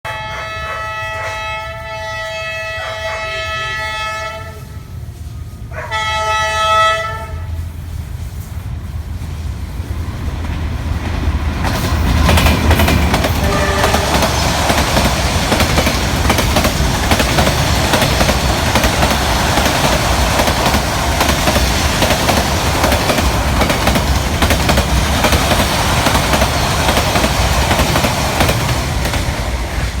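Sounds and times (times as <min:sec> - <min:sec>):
locomotive horn blasts: 0:00.1 - 0:05.0, 0:05.7 - 0:07.6, 0:13.4 - 0:14.2
train rumbling past: 0:00.1 - 0:30.0.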